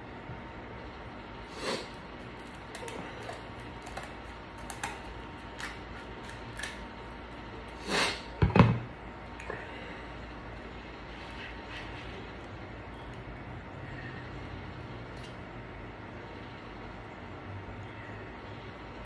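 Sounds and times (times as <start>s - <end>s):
chewing and food handling: 1.8s - 7.8s.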